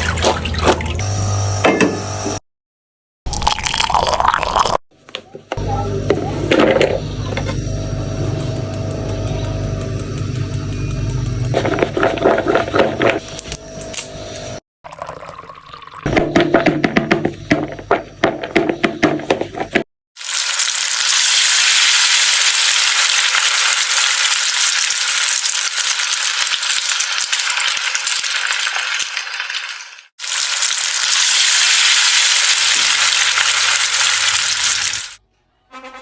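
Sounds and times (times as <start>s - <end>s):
fries sizzling in hot oil: 20.2s - 35.2s.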